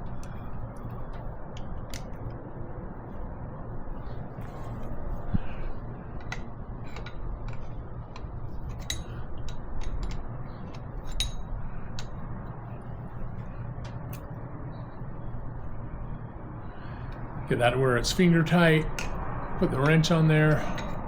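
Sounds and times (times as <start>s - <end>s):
steady low hum: 0.0s - 21.0s
tools clicking on metal fittings: 6.2s - 12.2s.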